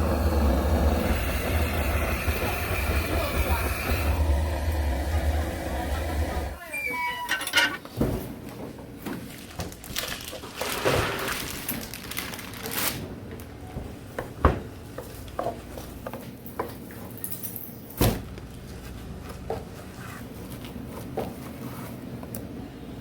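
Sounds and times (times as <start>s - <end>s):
metal utensils and dishes clattering: 7.2s - 8.0s.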